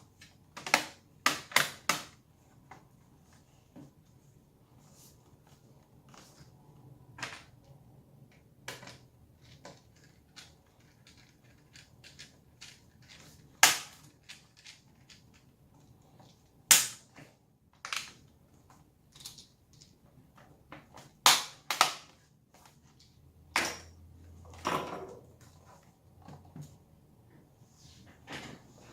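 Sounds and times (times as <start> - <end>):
sharp plastic snaps: 16.7 - 17.2, 21.0 - 22.2.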